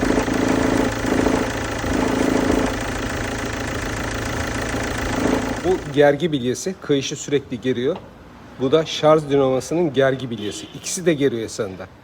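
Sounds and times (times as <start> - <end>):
belt drive low hum: 0.0 - 6.0
car engine idling: 0.0 - 6.0.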